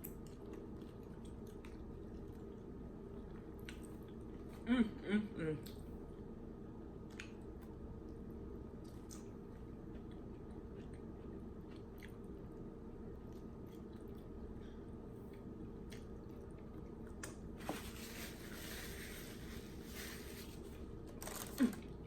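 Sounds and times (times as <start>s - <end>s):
chewing and biting food: 0.0s - 4.6s, 7.0s - 14.6s, 15.2s - 17.5s
low room hum: 0.0s - 22.0s.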